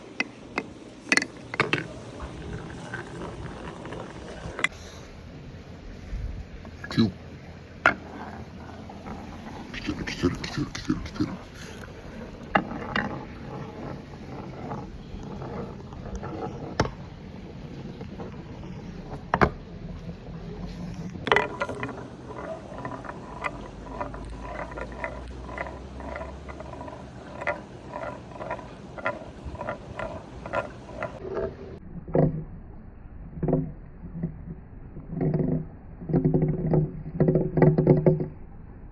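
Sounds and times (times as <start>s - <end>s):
ball rolling on wood: 0.0s - 4.8s, 6.6s - 32.6s, 33.3s - 38.4s
regular clacks: 0.0s - 4.8s, 7.8s - 31.5s.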